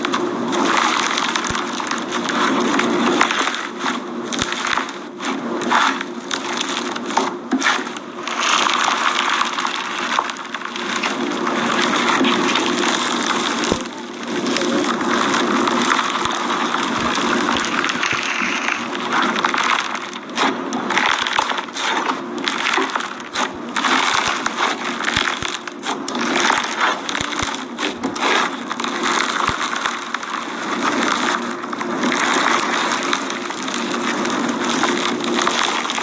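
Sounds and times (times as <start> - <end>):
slime squishing and crackling: 0.0 - 36.0.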